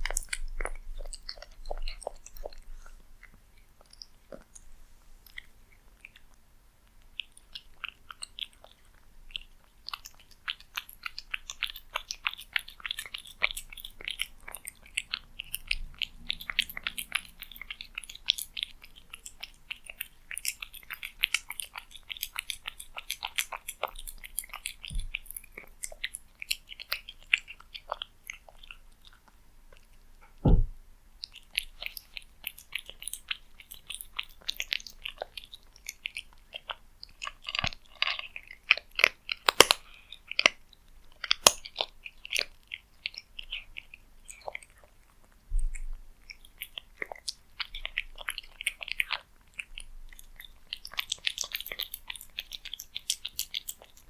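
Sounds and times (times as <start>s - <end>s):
cat chewing and lapping: 0.0s - 30.3s, 31.1s - 54.0s
soft thump: 30.4s - 30.8s.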